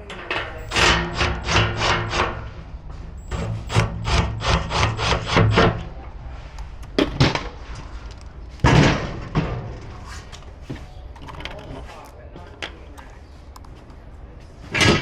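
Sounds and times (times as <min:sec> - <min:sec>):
metal parts tapping and knocking: 0:06.6 - 0:12.9.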